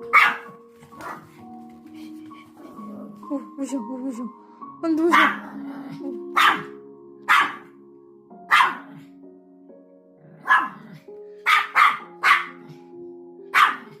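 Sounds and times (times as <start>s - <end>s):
dog barking: 0.0s - 1.3s, 5.1s - 5.4s, 6.3s - 7.8s, 8.5s - 9.0s, 10.4s - 12.8s, 13.5s - 14.0s
background music: 0.0s - 14.0s.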